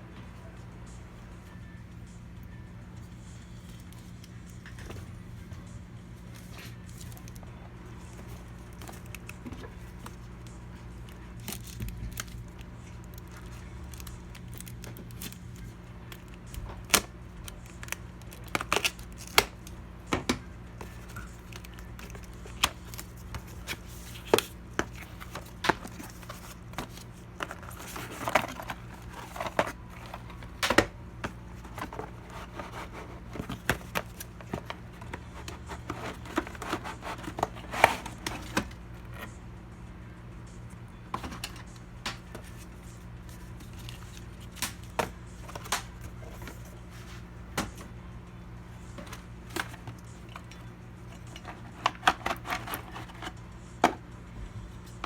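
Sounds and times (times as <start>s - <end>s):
steady low hum: 0.0s - 55.0s
packaging crinkling: 20.8s - 38.7s.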